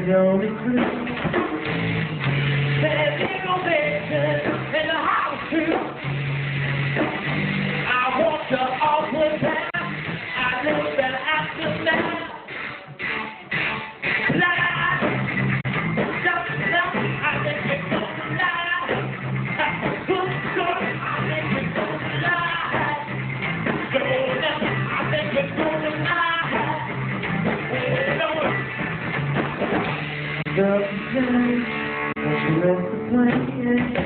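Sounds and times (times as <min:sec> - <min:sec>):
bass line: 0:00.0 - 0:34.0
drums: 0:00.0 - 0:34.0
electric guitar: 0:00.0 - 0:34.0.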